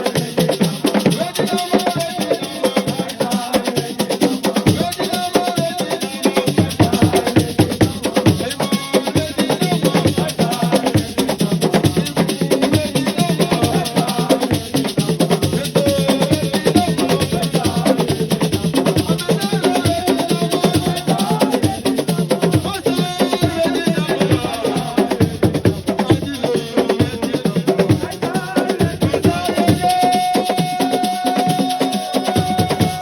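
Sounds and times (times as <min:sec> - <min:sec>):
drums: 0:00.0 - 0:33.0.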